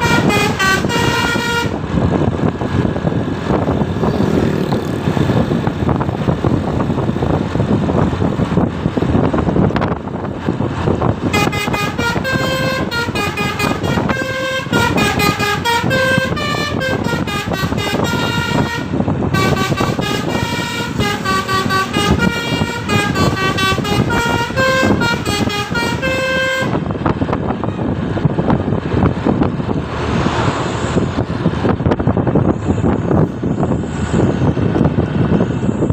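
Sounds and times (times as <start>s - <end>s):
multi-tone air horn melody: 0.0s - 1.8s, 11.3s - 26.9s
vehicle noise: 0.0s - 35.9s.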